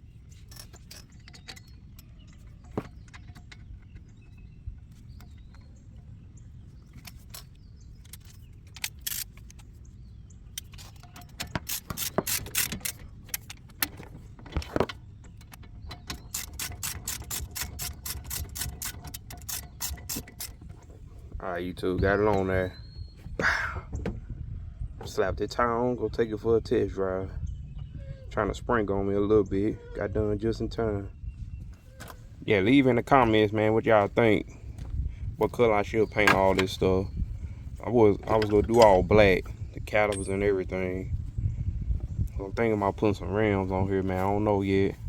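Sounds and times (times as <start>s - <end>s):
socket ratchet clicking: 7.1s - 9.6s, 10.6s - 14.0s, 15.4s - 20.6s.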